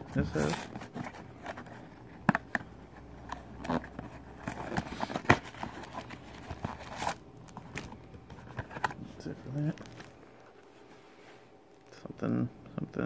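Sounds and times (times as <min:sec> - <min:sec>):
packaging crinkling and clicking: 0:03.3 - 0:10.7.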